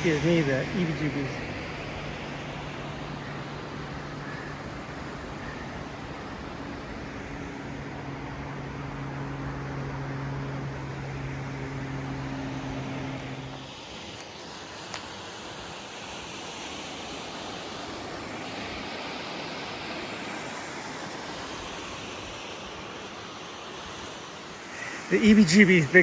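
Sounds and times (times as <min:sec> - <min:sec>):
waterfall roaring: 0:00.0 - 0:03.0, 0:13.3 - 0:26.0.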